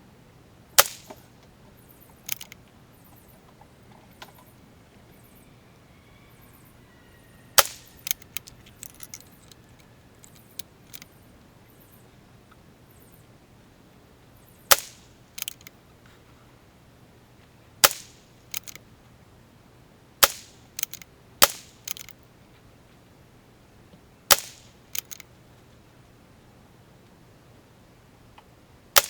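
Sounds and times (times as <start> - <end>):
rifle shots: 0.8 - 1.2, 7.6 - 9.6, 14.7 - 15.7, 20.2 - 22.1, 24.3 - 25.2
rifle bolt clicks: 2.3 - 2.6, 7.6 - 11.1, 14.7 - 15.7, 17.8 - 18.8, 20.2 - 22.2, 24.3 - 25.2.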